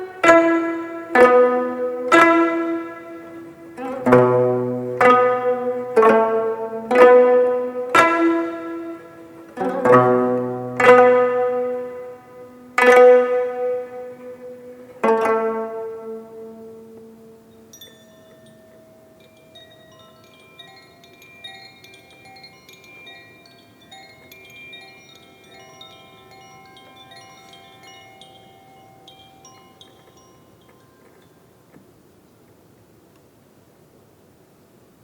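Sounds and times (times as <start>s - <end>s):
plucked zither notes: 0.0s - 30.3s.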